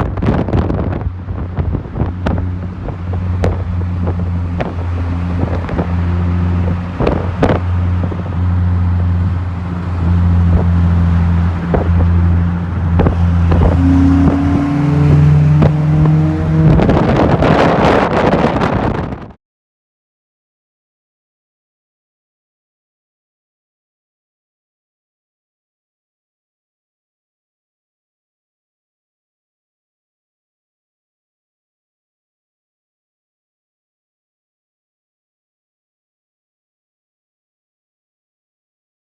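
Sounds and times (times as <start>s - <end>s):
car engine humming: 0.0s - 19.3s
wind on microphone: 0.0s - 19.4s.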